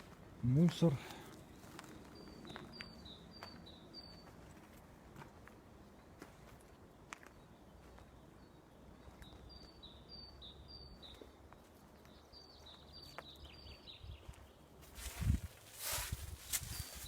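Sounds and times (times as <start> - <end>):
songbird singing: 0.0 - 17.0.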